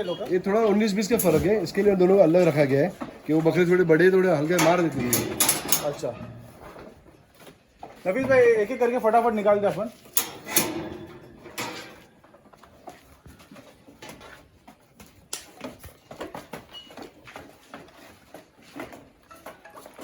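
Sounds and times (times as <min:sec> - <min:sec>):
goat hoof taps and scuffling: 0:00.0 - 0:04.9, 0:06.5 - 0:08.6, 0:11.6 - 0:20.0.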